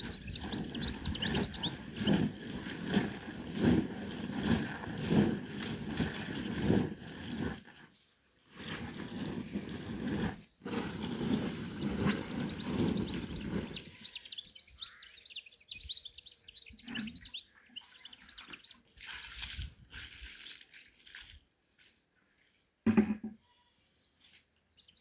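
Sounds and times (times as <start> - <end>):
small birds chirping: 0.0 - 3.1, 10.9 - 18.9, 23.5 - 25.0
broad rustling noise: 0.0 - 14.3.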